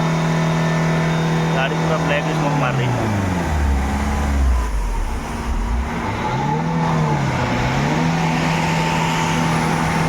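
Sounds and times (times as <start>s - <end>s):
diesel engine revving: 0.0s - 10.0s.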